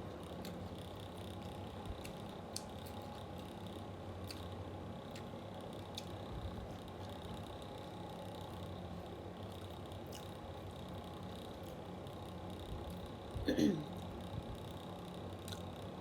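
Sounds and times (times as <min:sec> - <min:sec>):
electric fan hum: 0:00.0 - 0:16.0
chewing: 0:01.4 - 0:07.2, 0:09.5 - 0:10.4.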